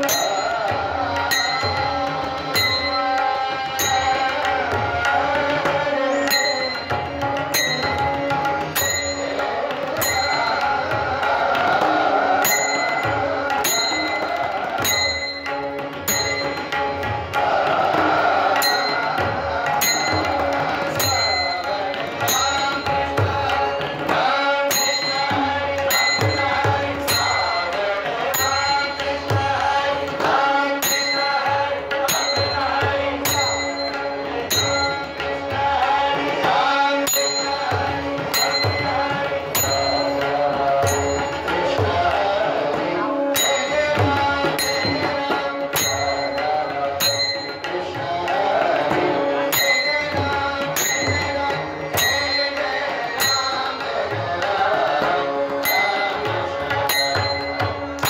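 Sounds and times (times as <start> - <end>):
small metal cymbals: 0.0 - 4.8, 5.5 - 11.0, 11.8 - 17.2, 23.8 - 35.5, 37.0 - 41.9, 43.2 - 48.0, 48.8 - 54.2, 55.0 - 58.0
hand drums: 0.0 - 58.0
person singing devotional melody: 0.0 - 58.0.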